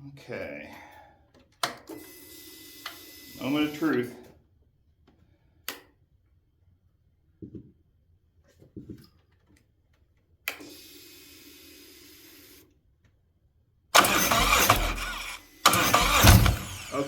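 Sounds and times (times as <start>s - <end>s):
motorcycle engine cranking: 14.0s - 17.0s.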